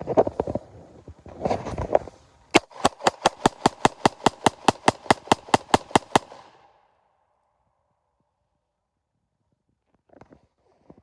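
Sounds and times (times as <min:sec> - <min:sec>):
firearm firing rapid shots: 0:02.6 - 0:06.7.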